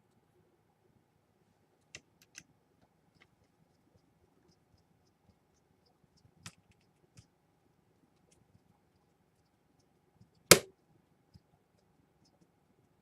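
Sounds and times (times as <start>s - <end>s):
small parts clicking and tapping: 1.8s - 7.3s.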